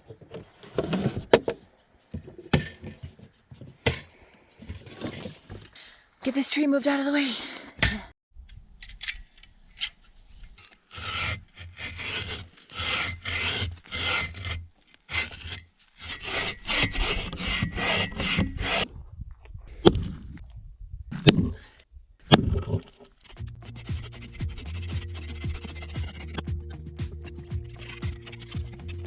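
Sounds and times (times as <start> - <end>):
hand saw cutting log: 10.8 - 18.9, 23.3 - 29.0.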